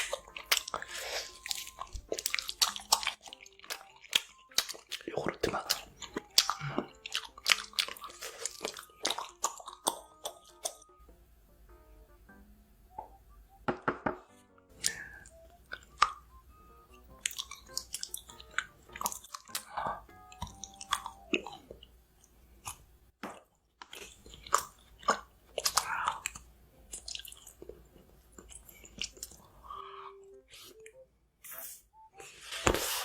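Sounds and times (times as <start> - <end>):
chewing and biting food: 0.0 - 10.9, 17.1 - 29.5
soft background music: 0.0 - 23.1, 23.9 - 33.0.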